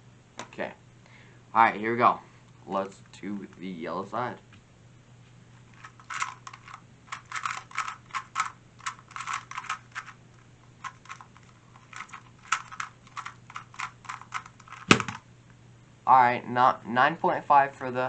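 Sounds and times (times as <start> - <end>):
plastic puzzle cube clicking: 5.8 - 10.2, 10.8 - 15.2
sharp knock: 14.9 - 15.2.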